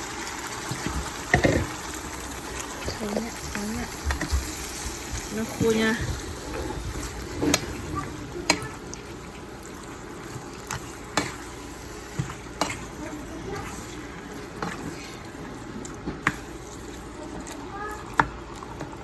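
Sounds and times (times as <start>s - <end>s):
curry sizzling in a pot: 0.0s - 19.0s.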